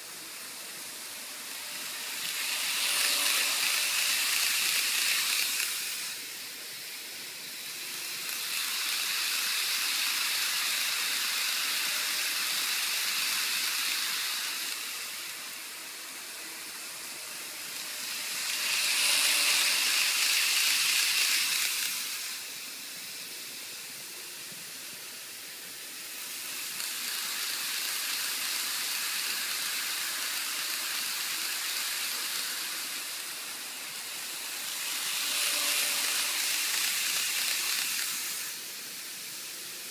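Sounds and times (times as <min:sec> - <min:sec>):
model train whirring past: 0:00.0 - 0:39.9.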